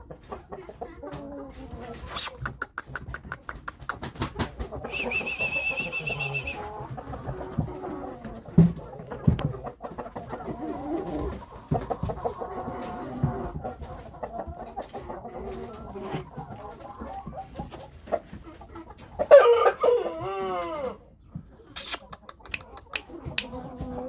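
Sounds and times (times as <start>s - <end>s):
rooster clucking and calling: 0.5s - 8.4s, 19.2s - 21.1s, 21.7s - 24.0s.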